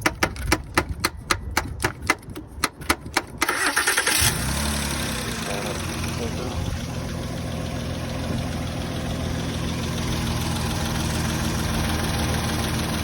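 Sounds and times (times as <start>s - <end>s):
car engine idling: 3.5s - 13.0s.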